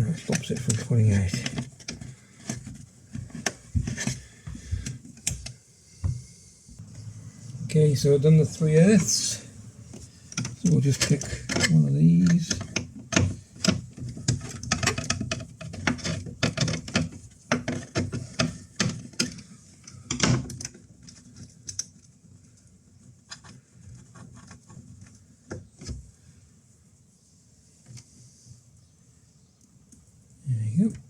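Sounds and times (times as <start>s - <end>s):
small clicks of wire connectors: 17.9s - 22.1s.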